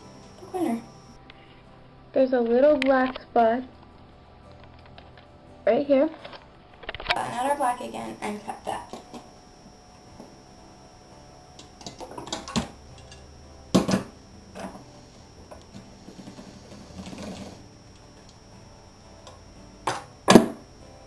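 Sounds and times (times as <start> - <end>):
faint ticks: 0.0 - 1.2, 7.1 - 21.0.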